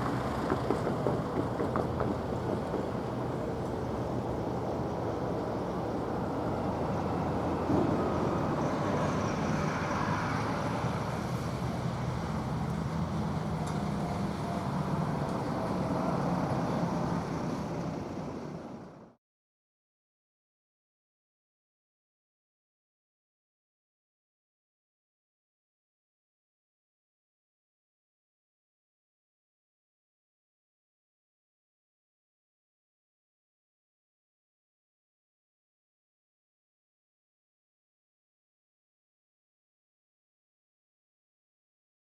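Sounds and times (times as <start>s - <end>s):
vehicle running hum: 0.0s - 19.2s.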